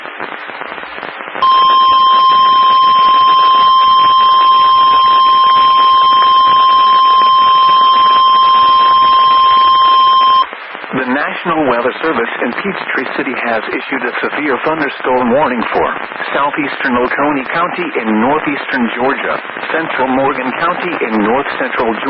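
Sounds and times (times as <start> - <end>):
loud steady high alarm beep: 1.4 - 10.5.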